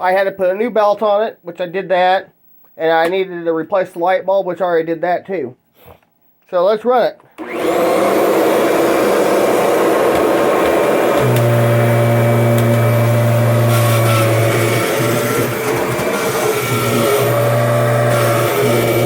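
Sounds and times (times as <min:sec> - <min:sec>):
vacuum cleaner motor whine: 0:07.4 - 0:19.0.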